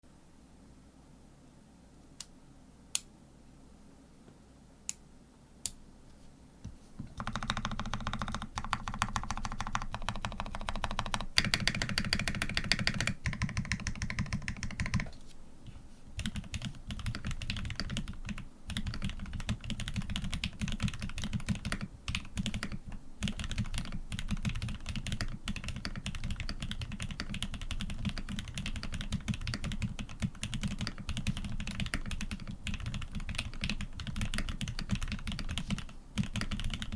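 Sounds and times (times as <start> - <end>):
typing on mechanical keyboard: 7.1 - 15.1, 16.2 - 36.9.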